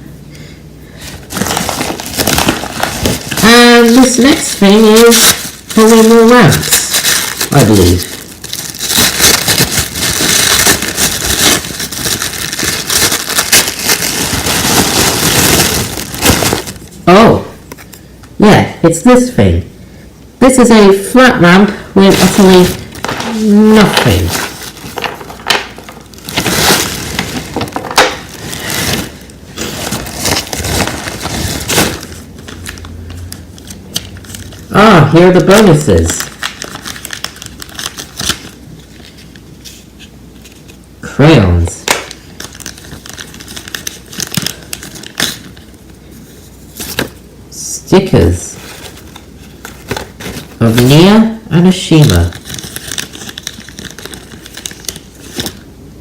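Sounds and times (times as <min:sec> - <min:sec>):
packaging rustling and crinkling: 0:01.0 - 0:17.0, 0:22.0 - 0:34.7, 0:35.4 - 0:40.8, 0:41.8 - 0:47.2, 0:48.5 - 0:51.0, 0:52.0 - 0:55.7
wooden pieces scraping and rustling: 0:22.2 - 0:30.0.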